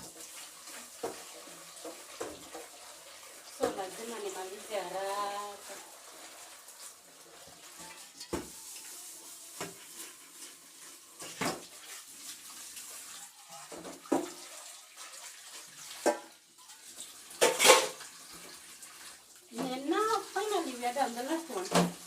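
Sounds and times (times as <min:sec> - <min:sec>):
pots and dishes clanking: 0:00.0 - 0:02.9, 0:13.5 - 0:14.6, 0:15.9 - 0:18.1
tap water running: 0:00.0 - 0:22.0.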